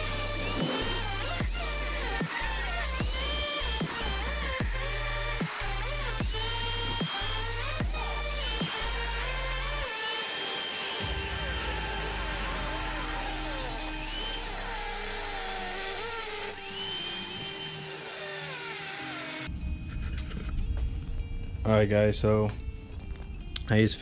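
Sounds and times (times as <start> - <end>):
electronic music with bass: 0.0 - 10.1, 10.9 - 17.7
power tool whining: 0.0 - 19.5.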